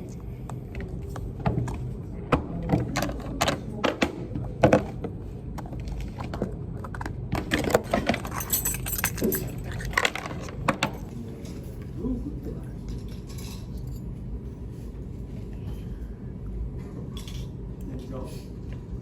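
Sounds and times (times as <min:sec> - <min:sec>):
tableware clinking: 0:12.9 - 0:14.1.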